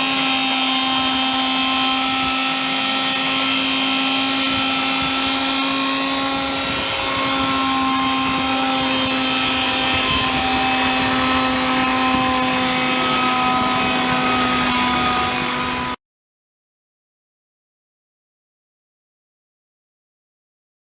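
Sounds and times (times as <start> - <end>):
steady whining tones: 2.1 - 16.0
machining machine motor humming: 3.8 - 15.9.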